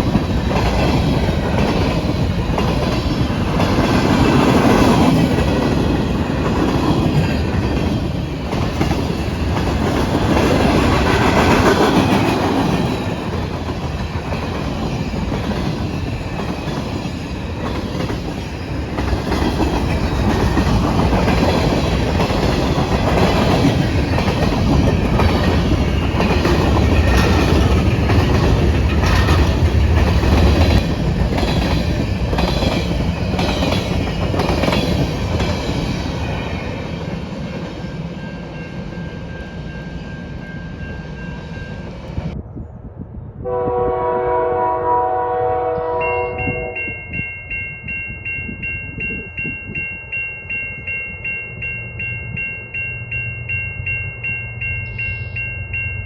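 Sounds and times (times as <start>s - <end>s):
train wheels clacking over rail joints: 0.0s - 36.7s.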